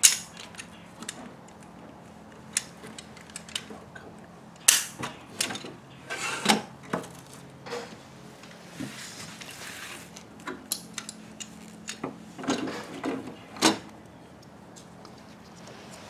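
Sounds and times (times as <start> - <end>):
clicks and knocks of parts handled: 0.0 - 5.7, 10.1 - 15.4.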